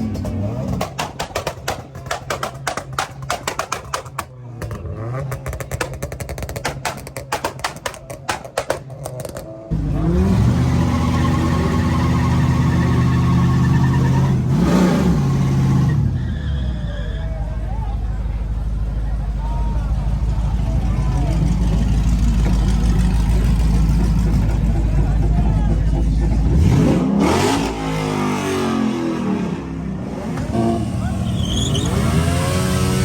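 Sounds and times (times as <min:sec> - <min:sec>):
exhaust popping and crackling: 0:00.0 - 0:09.8.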